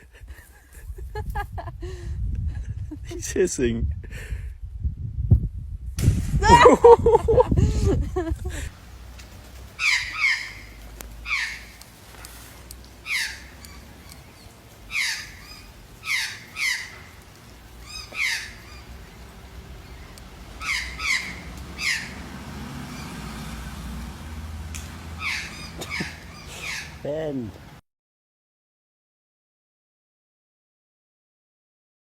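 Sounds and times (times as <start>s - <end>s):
bird squawking: 9.8s - 11.8s, 13.0s - 22.2s, 25.2s - 27.5s.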